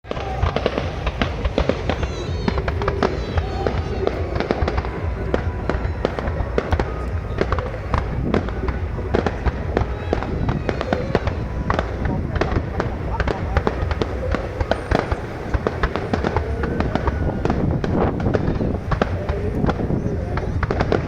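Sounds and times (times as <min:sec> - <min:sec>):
fireworks bangs and crackles: 0:00.0 - 0:21.0
music: 0:00.0 - 0:21.0
voices: 0:00.0 - 0:21.0.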